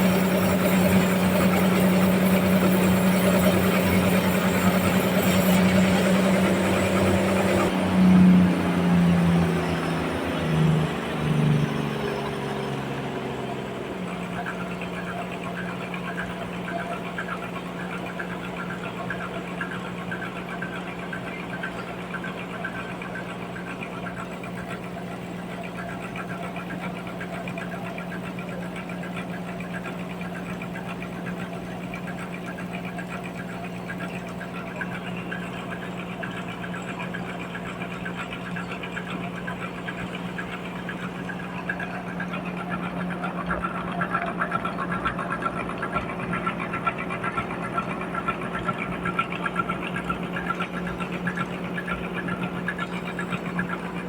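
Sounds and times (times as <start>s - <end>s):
sawmill machinery running: 0.0s - 54.0s.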